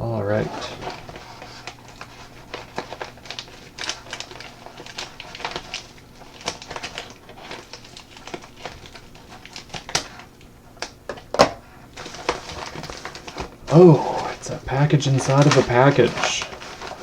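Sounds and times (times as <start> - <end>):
packaging crinkling: 0.3 - 17.0.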